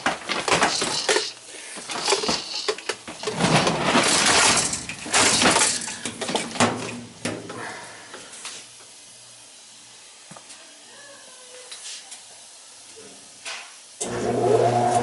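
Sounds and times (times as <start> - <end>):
metal clattering and clinking: 0.0 - 6.4
furnace humming: 0.0 - 15.0.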